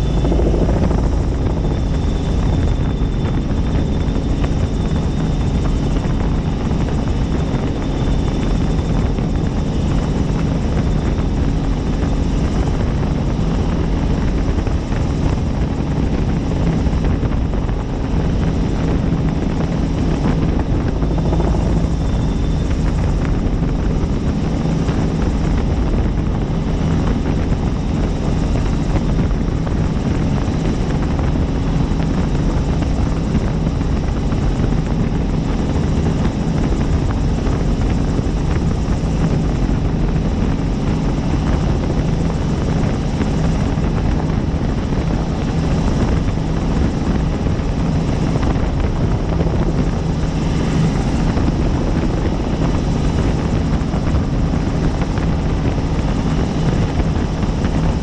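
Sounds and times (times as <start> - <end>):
faint high whine: 0.0 - 13.5, 17.1 - 25.5
helicopter rotor and engine drone: 0.0 - 58.0.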